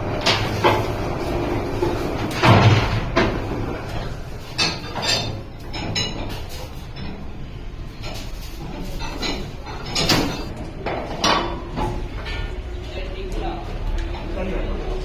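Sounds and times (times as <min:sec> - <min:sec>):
sheet metal knocks and clanks: 0:02.3 - 0:07.2, 0:08.1 - 0:12.5.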